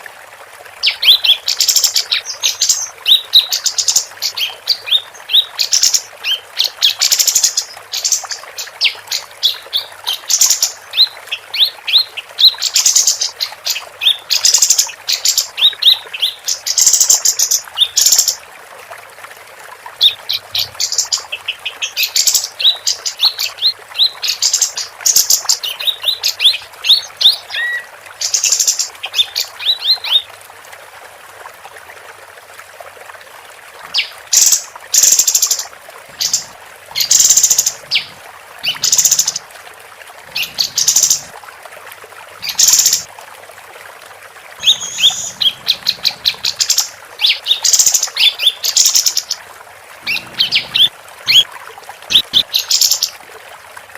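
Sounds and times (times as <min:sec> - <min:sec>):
bird chattering and trilling: 0:44.6 - 0:49.3, 0:50.0 - 0:51.4.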